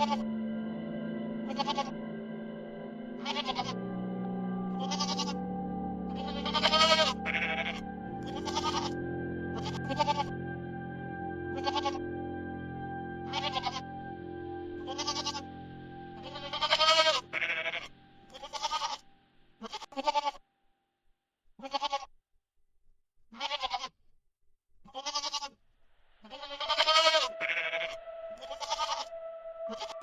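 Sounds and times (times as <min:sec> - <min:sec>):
animal crying out: 0:06.2 - 0:08.9, 0:16.4 - 0:19.0, 0:26.3 - 0:29.1.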